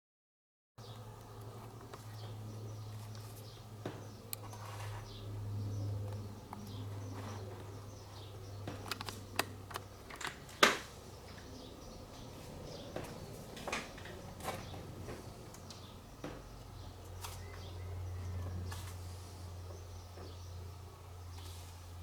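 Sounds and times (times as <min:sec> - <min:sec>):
steady low hum: 0:00.8 - 0:22.0
clicks of parts and tools handled: 0:08.6 - 0:11.5.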